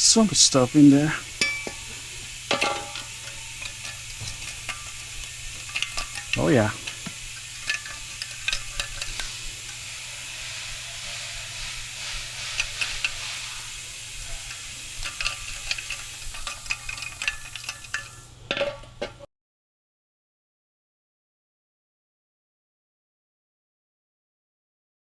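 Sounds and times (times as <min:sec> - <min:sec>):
steady hiss: 0:00.0 - 0:19.2
metal part clicking and rattling: 0:14.4 - 0:19.2.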